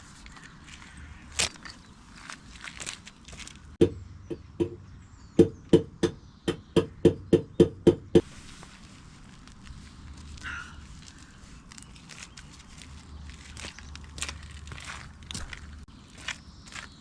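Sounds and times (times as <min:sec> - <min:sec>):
sharp knocks with hollow ring: 0:03.8 - 0:04.8, 0:05.4 - 0:08.2.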